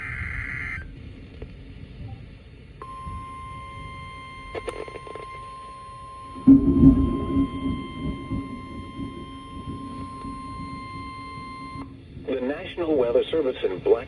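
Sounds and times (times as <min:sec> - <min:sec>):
radio warning alarm tone: 0:00.0 - 0:00.9, 0:02.8 - 0:13.4
radio static hiss: 0:00.0 - 0:14.0
loud low rumbling burst: 0:06.1 - 0:14.0.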